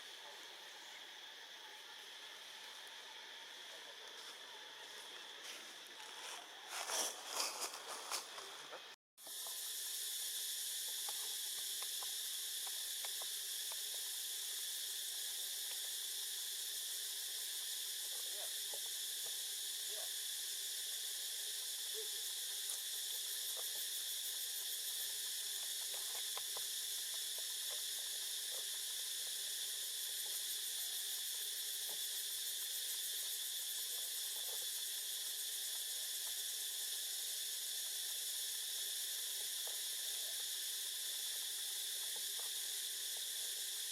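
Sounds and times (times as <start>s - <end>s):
insect chorus drone: 0.0s - 43.9s
faint ticks: 25.3s - 28.7s.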